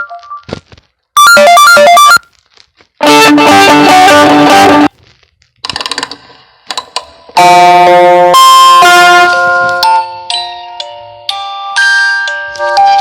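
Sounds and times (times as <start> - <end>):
phone ringtone tune: 1.2 - 2.2, 7.4 - 13.0
ringtone melody of held notes: 1.2 - 2.3, 7.4 - 13.0.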